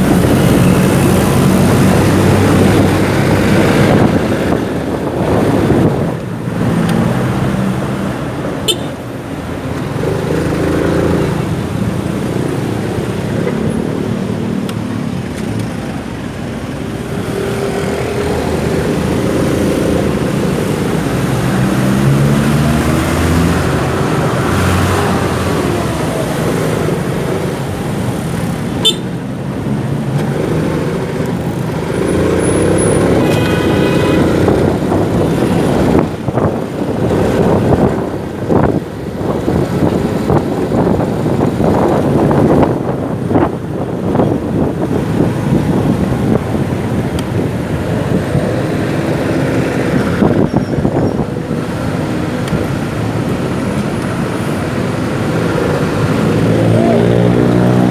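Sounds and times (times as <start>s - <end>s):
road and wind noise: 0.0s - 57.9s
vehicle horn: 8.6s - 9.0s, 28.8s - 29.1s, 32.8s - 34.5s.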